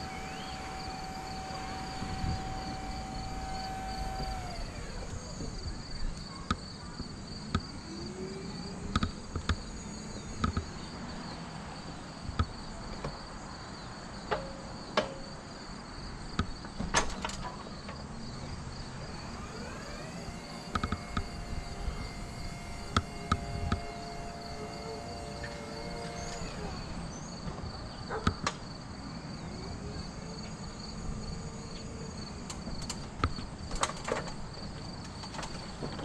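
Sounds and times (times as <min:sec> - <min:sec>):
humming tone: 0:00.0 - 0:05.7, 0:19.4 - 0:27.0
insects chirring: 0:00.0 - 0:36.0
sharp clicks and knocks: 0:08.9 - 0:09.7, 0:10.4 - 0:10.7, 0:20.1 - 0:21.4, 0:28.2 - 0:28.6, 0:32.5 - 0:36.0.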